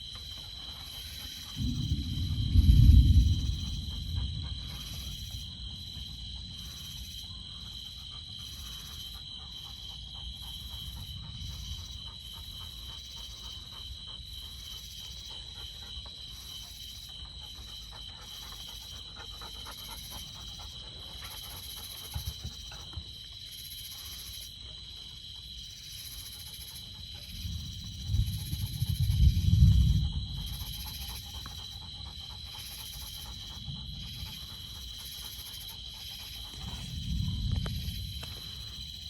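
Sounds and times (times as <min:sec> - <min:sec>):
insects chirring: 0:00.0 - 0:39.0
low rumble: 0:01.6 - 0:06.2, 0:36.2 - 0:39.0.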